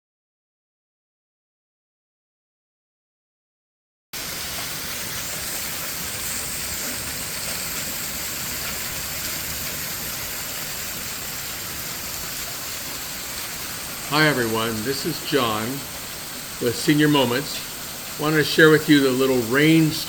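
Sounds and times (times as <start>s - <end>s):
heavy rain pouring: 4.2s - 20.0s.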